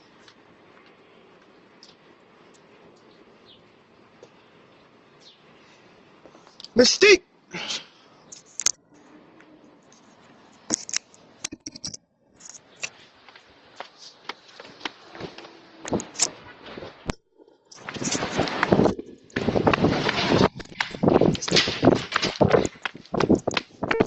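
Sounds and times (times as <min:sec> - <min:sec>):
handling clicks and scrapes: 0:09.9 - 0:24.0
rustling scrape: 0:12.4 - 0:17.1, 0:17.7 - 0:23.4.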